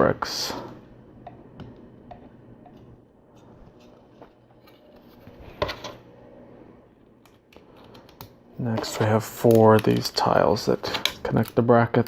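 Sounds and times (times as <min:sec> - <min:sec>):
plastic pieces clicking together: 0:09.3 - 0:11.7.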